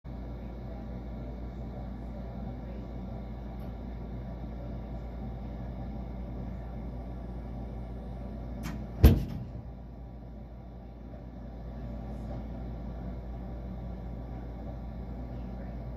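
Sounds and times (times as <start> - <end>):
furnace low hum: 0.0 - 15.9
loud sharp thump: 9.0 - 9.7.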